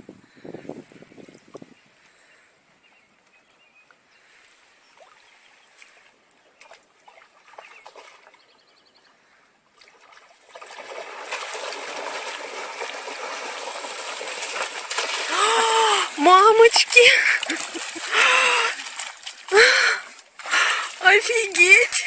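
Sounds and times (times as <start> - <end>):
water splashing and rushing: 9.8 - 22.0.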